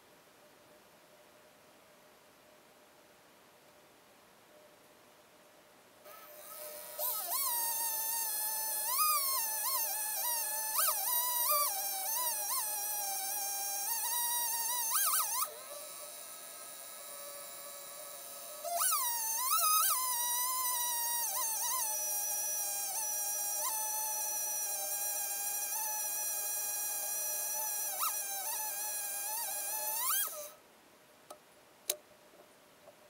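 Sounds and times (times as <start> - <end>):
chainsaw engine cutting: 6.1 - 30.6.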